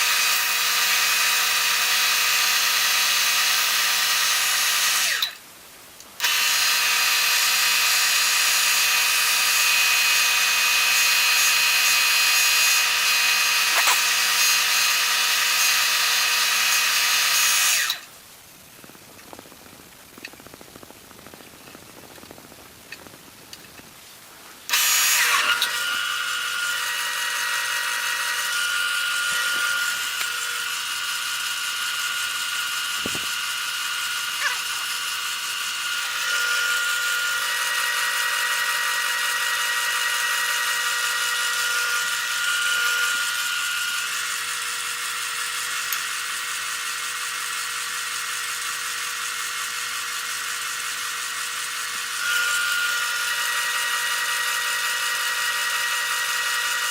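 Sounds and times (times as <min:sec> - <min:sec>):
wood lathe whining: 0:00.0 - 0:05.4, 0:06.2 - 0:18.1, 0:24.7 - 0:56.9.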